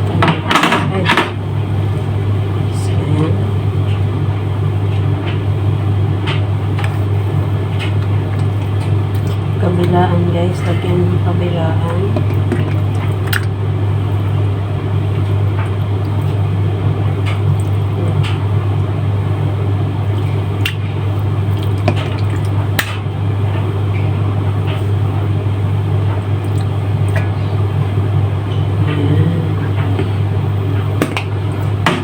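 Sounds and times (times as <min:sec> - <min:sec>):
steady low hum: 0:00.0 - 0:32.0
wet squishing of raw meat: 0:20.1 - 0:23.0.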